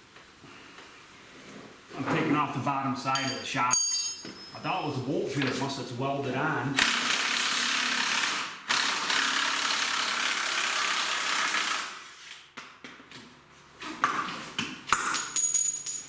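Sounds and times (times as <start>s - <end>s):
impact wrench running: 6.8s - 12.1s.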